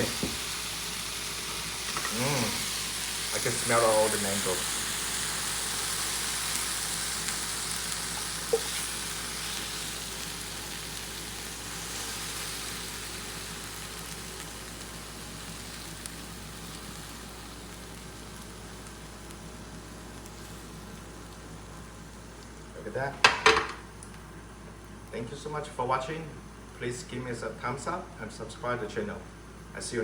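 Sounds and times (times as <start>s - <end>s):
food sizzling in a pan: 0.0s - 22.7s.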